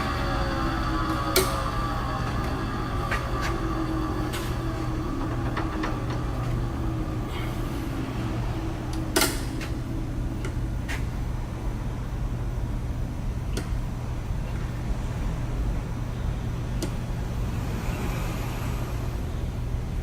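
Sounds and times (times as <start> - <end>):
surface grinder humming: 0.0 - 10.8
faint whine falling in pitch: 0.0 - 20.0.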